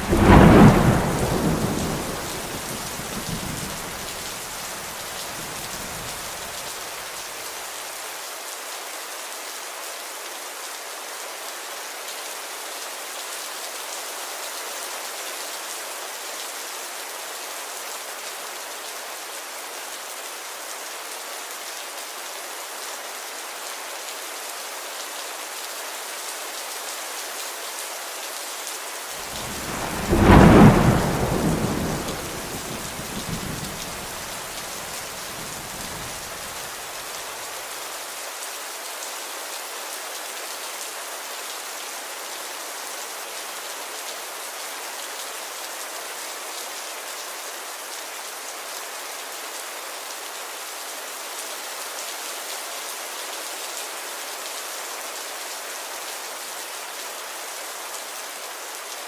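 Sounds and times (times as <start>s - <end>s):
thunder clap and rumble: 0.0s - 4.2s, 29.3s - 36.3s
steady rain: 0.0s - 59.0s.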